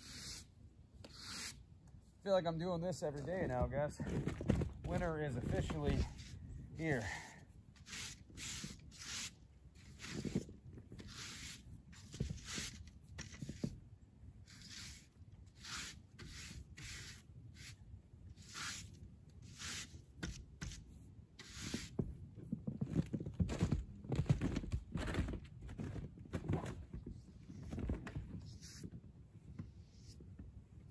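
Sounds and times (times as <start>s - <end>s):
snow brushing swishes: 18.4s - 18.8s.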